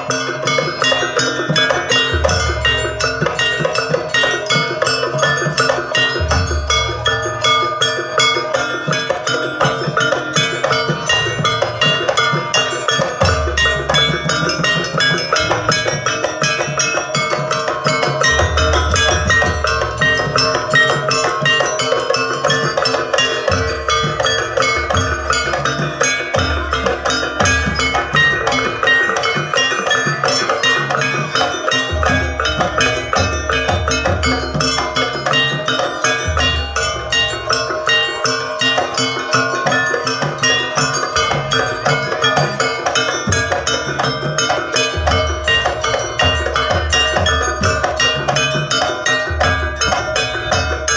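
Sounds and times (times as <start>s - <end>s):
drum strokes: 0.0s - 50.9s
gong-chimes and metallophones: 0.0s - 50.9s
ringing metal gamelan notes: 0.0s - 50.9s.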